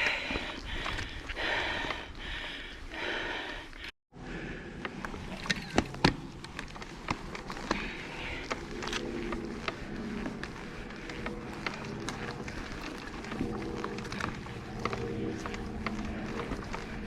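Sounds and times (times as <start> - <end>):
heavy hard breathing: 0.0 - 5.3, 7.4 - 17.0
bike rattling over rough trail: 4.4 - 17.0.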